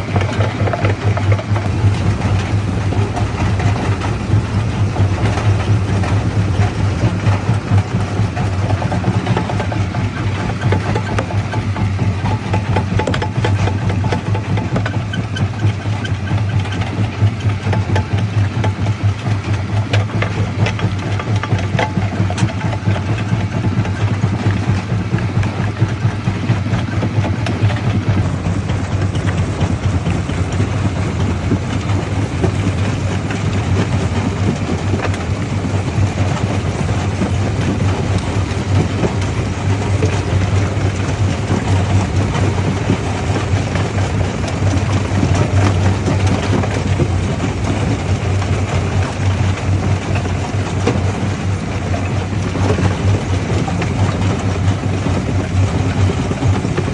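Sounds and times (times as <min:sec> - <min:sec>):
crusher machine drone: 0:00.0 - 0:56.9.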